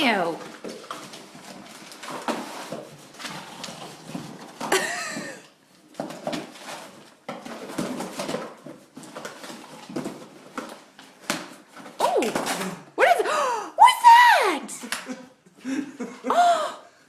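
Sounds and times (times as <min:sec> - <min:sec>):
wrapping paper rustling and tearing: 0:00.4 - 0:04.4.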